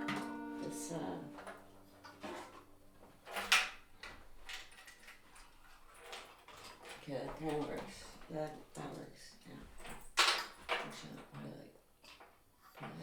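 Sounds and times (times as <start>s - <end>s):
guitar chord: 0.0s - 3.2s.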